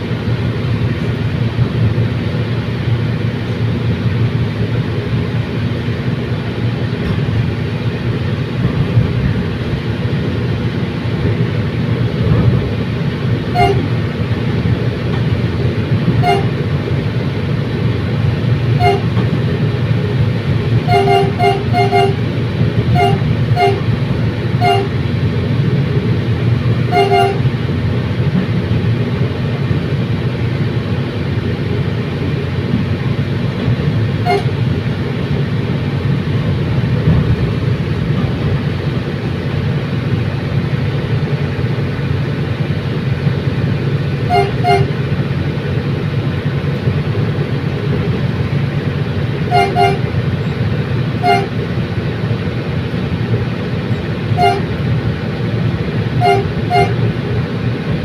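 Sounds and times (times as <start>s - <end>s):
train rumbling: 0.0s - 58.0s
train horn toots: 13.5s - 14.0s, 16.1s - 16.7s, 18.8s - 19.2s, 20.8s - 24.0s, 24.6s - 25.1s, 26.9s - 27.6s, 34.2s - 34.7s, 44.2s - 45.1s, 49.4s - 50.2s, 51.2s - 51.6s, 54.3s - 54.8s, 56.2s - 57.1s.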